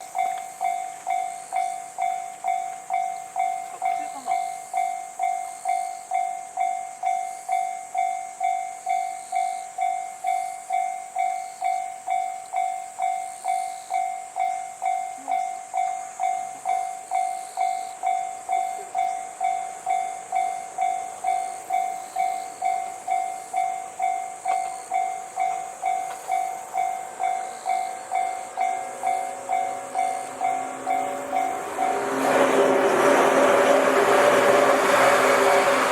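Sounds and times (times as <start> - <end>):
faint approaching train: 0.0 - 35.9
level-crossing warning bell: 0.0 - 35.9.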